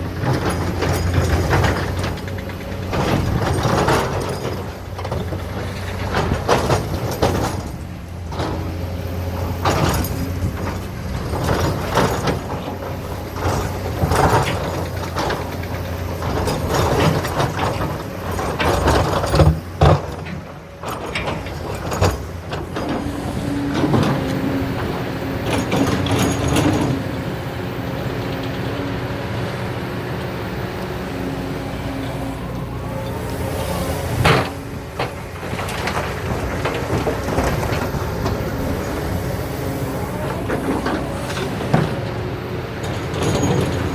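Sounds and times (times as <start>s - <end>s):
excavator diesel engine running: 0.0s - 43.9s.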